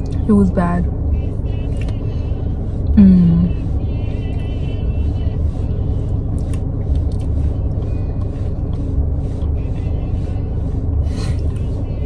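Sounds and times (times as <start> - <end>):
vehicle engine rumble: 0.0 - 12.0
person humming: 2.9 - 4.4.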